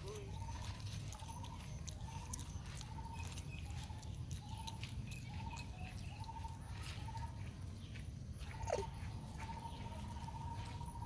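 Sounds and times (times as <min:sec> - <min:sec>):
animal calling: 0:00.0 - 0:07.4
steady low rumble: 0:00.0 - 0:11.0.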